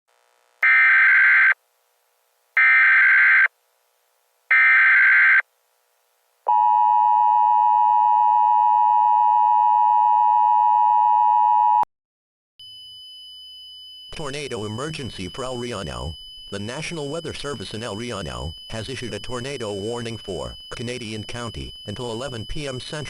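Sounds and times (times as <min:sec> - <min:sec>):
digital data bursts: 0:14.2 - 0:23.0.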